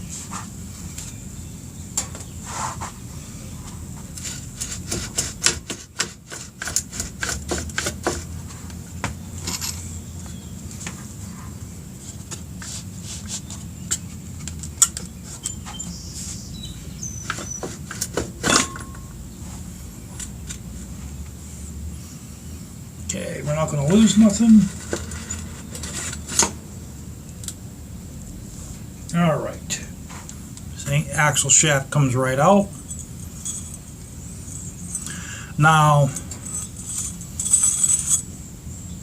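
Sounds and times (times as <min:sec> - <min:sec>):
steady low hum: 0:00.0 - 0:39.0
metallic clinks and knocks: 0:09.4 - 0:10.0, 0:32.7 - 0:35.2, 0:36.1 - 0:38.3.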